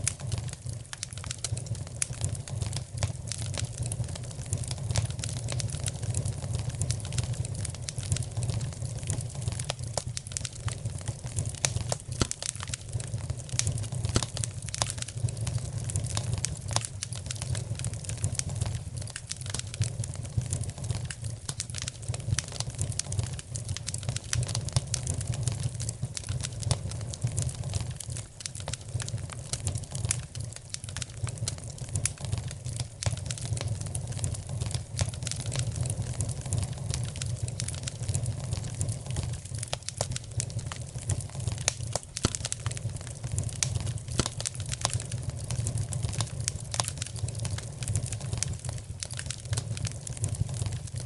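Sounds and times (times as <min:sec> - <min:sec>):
fire crackling in a fireplace: 0:00.0 - 0:51.0.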